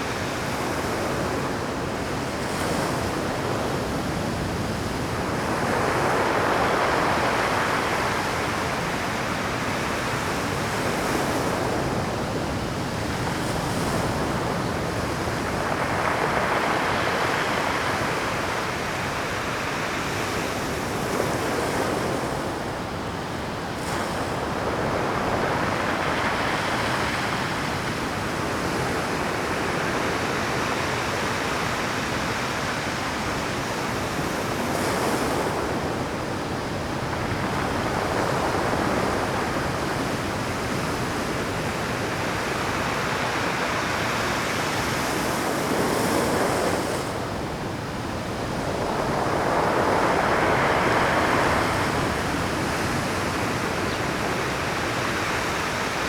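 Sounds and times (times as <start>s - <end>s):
waves breaking on rocky shore: 36.7s - 56.0s.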